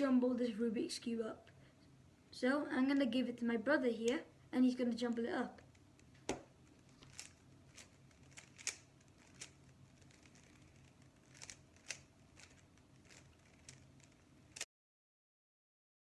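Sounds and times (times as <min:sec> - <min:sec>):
plastic puzzle cube clicking: 0:05.6 - 0:14.7.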